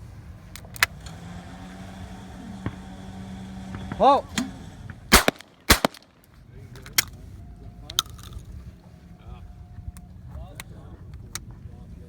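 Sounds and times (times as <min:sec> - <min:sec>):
low steady hum: 0:00.0 - 0:12.0
shotgun shots: 0:05.1 - 0:06.2.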